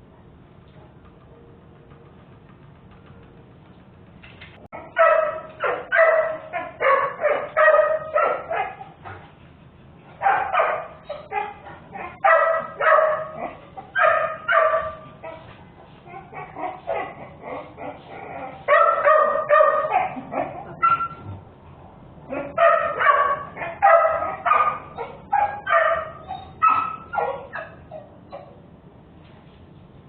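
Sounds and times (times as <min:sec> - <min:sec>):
dog barking: 0:04.8 - 0:09.0, 0:10.2 - 0:15.4, 0:16.3 - 0:21.3, 0:22.3 - 0:28.5.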